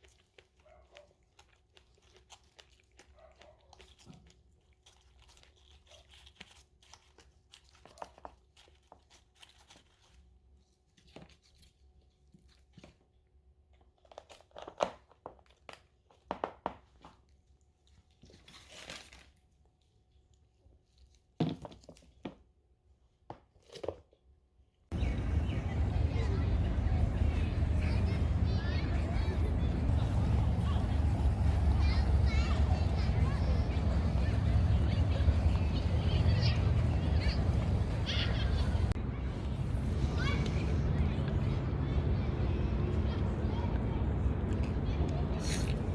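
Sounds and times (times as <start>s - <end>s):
crinkling: 0.0s - 22.2s
tearing: 1.7s - 10.3s, 18.2s - 19.4s.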